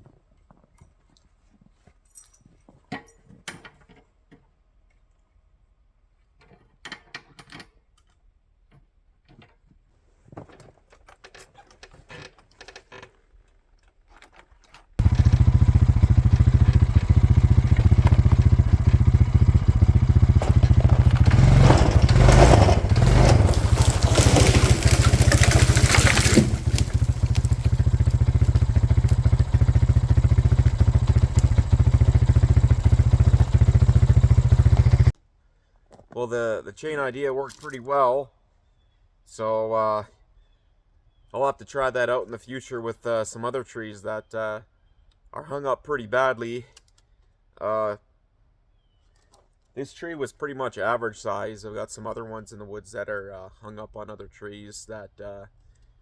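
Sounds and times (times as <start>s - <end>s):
atv engine running: 15.0s - 35.2s.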